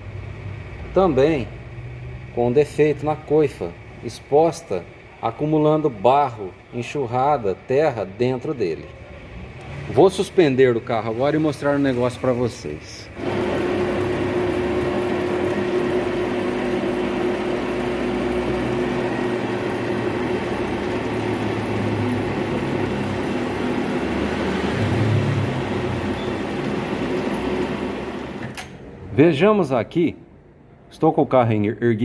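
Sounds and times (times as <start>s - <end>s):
car lift motor whirring: 9.4s - 29.0s.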